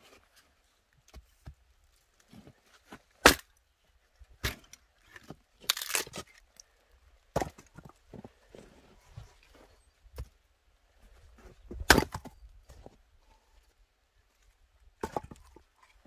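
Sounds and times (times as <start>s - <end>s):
axe chopping wood: 3.2s - 3.5s, 11.8s - 12.3s
wood splitting crack: 3.2s - 3.6s, 5.6s - 6.4s, 11.9s - 12.3s.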